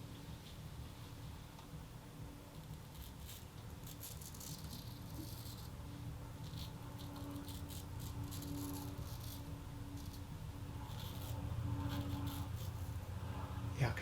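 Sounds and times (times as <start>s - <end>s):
razor scraping stubble: 2.6s - 13.0s.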